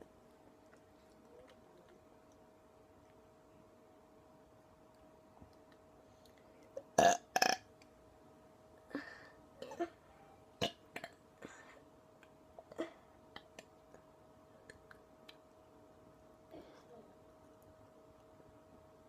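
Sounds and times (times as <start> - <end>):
person burping: 6.8 - 7.6
breathy sounds: 8.9 - 9.5.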